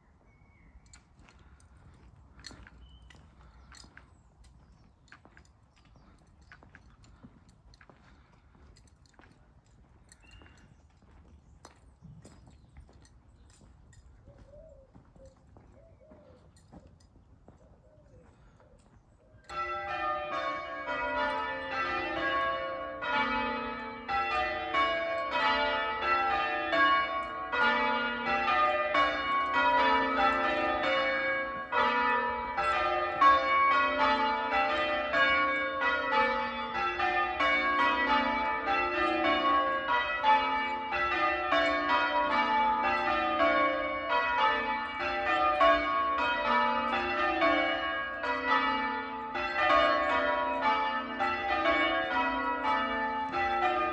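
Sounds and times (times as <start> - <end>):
church bells ringing: 18.4 - 53.9.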